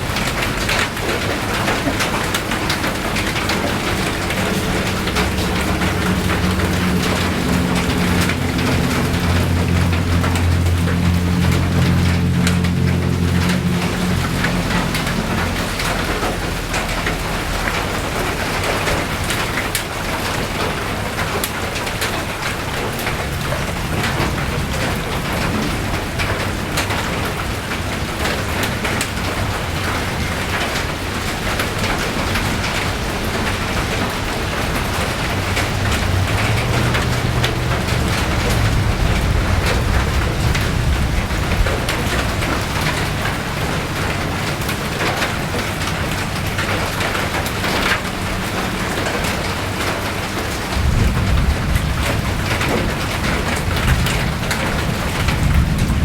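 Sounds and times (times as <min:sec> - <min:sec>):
low rumble: 0:00.0 - 0:19.4, 0:22.3 - 0:47.0
rain drops tapping: 0:00.0 - 0:56.0.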